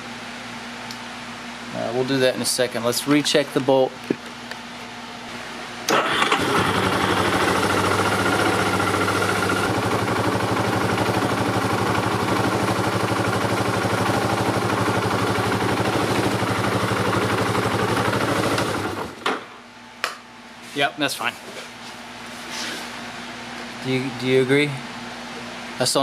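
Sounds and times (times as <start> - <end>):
engine starting and idling: 5.9 - 19.2.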